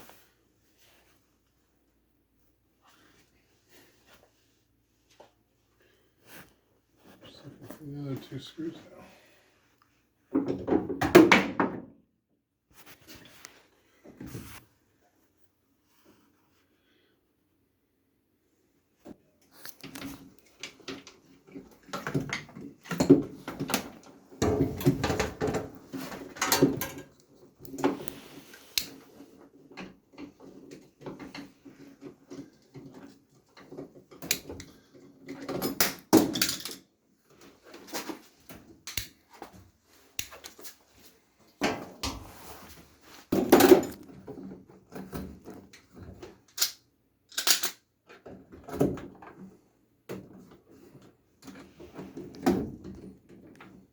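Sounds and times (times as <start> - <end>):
metal parts clanking and rattling: 30.2 - 36.9, 46.4 - 47.8.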